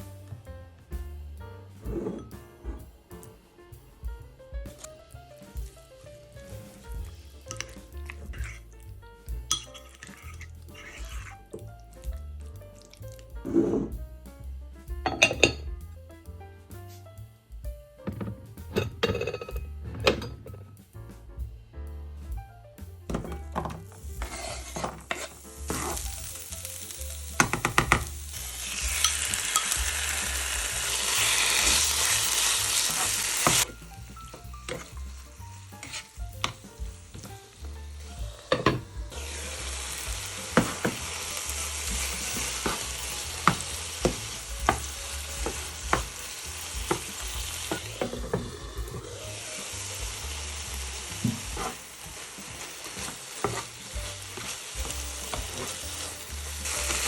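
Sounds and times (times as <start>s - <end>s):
food sizzling in a frying pan: 4.6s - 14.0s, 23.1s - 57.0s
utensil knocking against pan: 38.5s - 38.9s.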